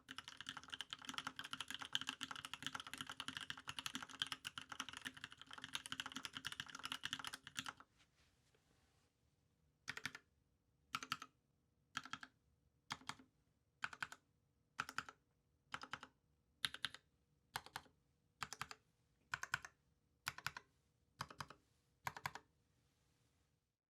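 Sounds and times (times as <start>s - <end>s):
typing on mechanical keyboard: 0.0s - 7.8s, 9.9s - 10.2s, 11.0s - 11.3s, 12.0s - 12.3s, 12.9s - 13.2s, 13.8s - 14.2s, 14.8s - 17.0s, 17.6s - 20.6s, 21.2s - 22.4s.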